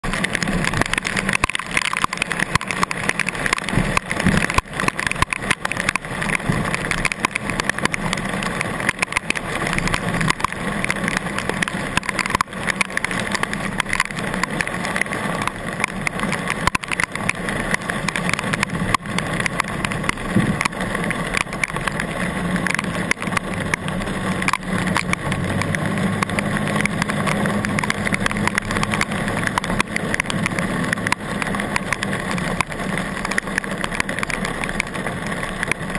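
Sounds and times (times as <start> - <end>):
heavy rain: 0.0 - 35.9
low engine hum: 0.0 - 35.9
running floodwater: 0.0 - 35.9.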